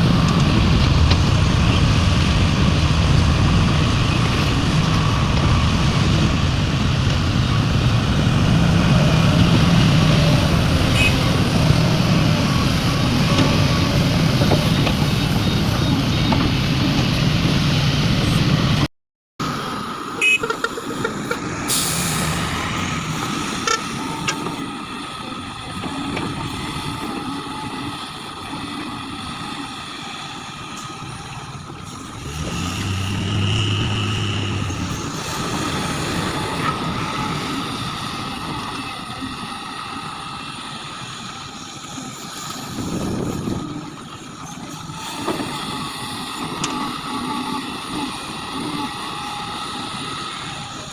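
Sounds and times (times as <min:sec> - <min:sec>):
heavy diesel engines running: 0:00.0 - 0:50.9.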